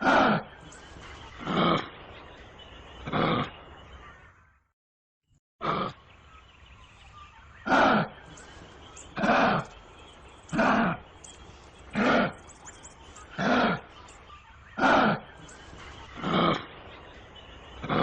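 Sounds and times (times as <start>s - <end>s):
kangaroo calling: 7.1s - 18.0s.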